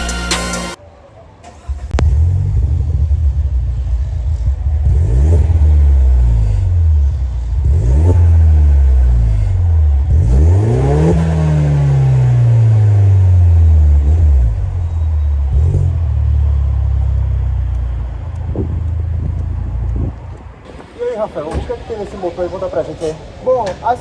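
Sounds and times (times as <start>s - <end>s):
turbo car engine accelerating: 1.6s - 20.6s.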